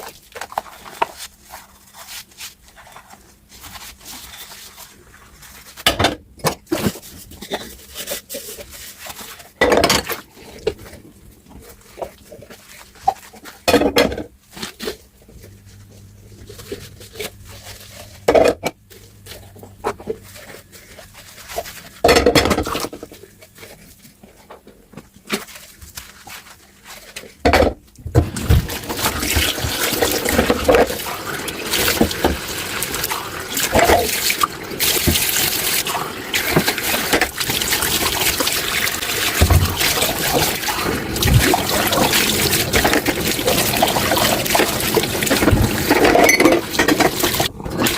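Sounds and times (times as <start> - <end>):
tap water pouring into sink: 28.2 - 47.9.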